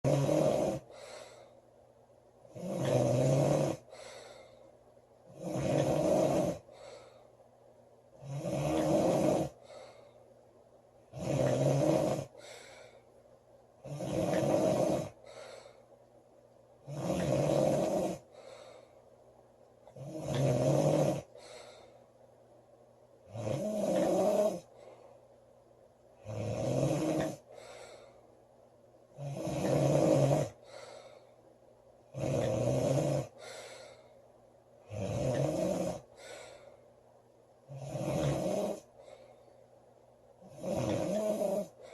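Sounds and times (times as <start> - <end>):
woman snoring loudly: 0.0 - 1.0, 2.5 - 4.0, 5.3 - 6.7, 8.2 - 9.6, 11.1 - 12.5, 13.8 - 15.2, 16.8 - 18.3, 19.9 - 21.4, 23.3 - 24.7, 26.2 - 27.5, 29.2 - 30.6, 32.1 - 33.4, 34.8 - 36.2, 37.7 - 38.9, 40.5 - 41.9.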